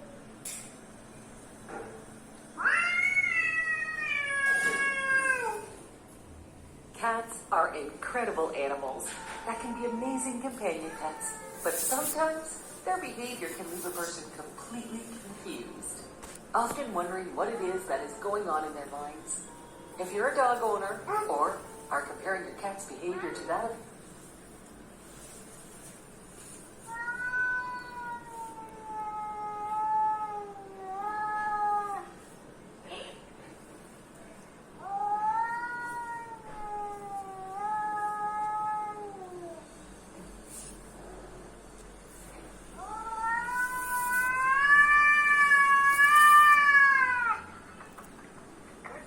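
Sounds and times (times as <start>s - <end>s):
cat yowling: 2.6s - 5.8s, 26.9s - 32.2s, 34.8s - 39.6s, 42.8s - 47.6s.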